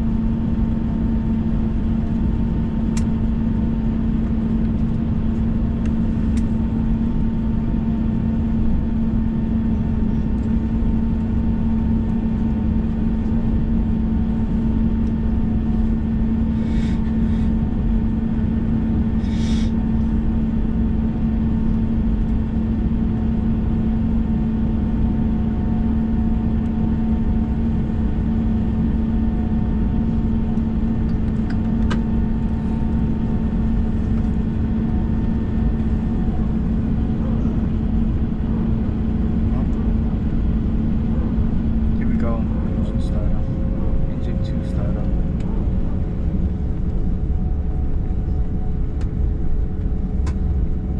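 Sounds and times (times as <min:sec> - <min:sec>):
airliner engines droning: 0:00.0 - 0:50.9
short hisses: 0:19.2 - 0:19.7.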